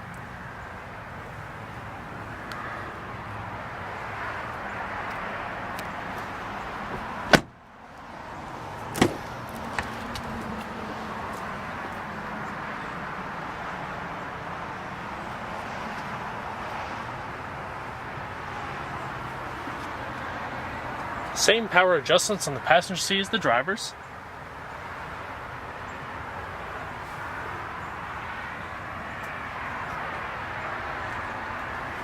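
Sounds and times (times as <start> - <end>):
outdoor background noise: 0.0 - 32.0
car door shutting thump: 6.9 - 7.5, 8.9 - 9.2.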